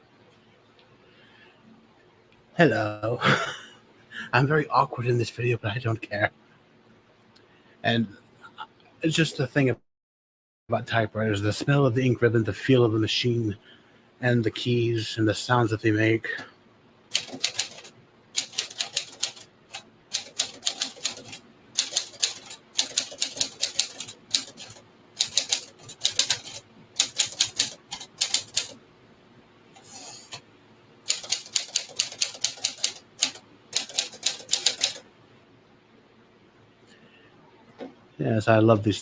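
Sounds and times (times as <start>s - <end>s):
manual typewriter typing: 17.1s - 28.8s, 31.1s - 35.0s.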